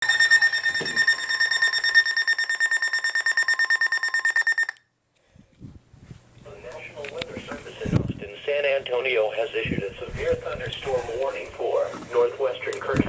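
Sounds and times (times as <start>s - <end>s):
high-pitched pulsing alarm beeps: 0.0s - 4.8s.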